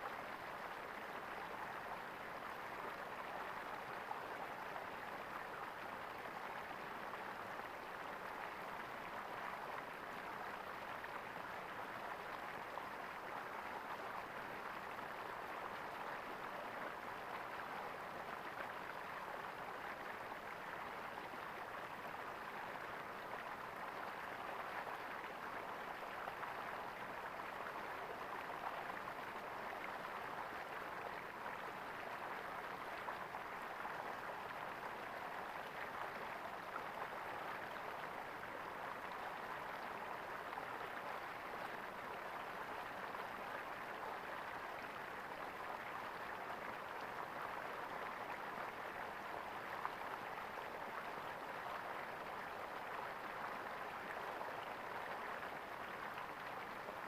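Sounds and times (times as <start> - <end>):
stream gurgling over stones: 0.0 - 57.0.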